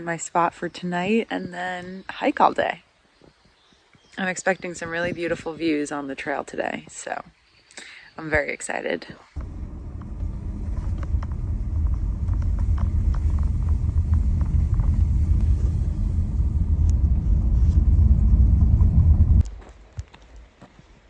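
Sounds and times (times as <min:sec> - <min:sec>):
road and tyre rumble: 0:09.4 - 0:19.6.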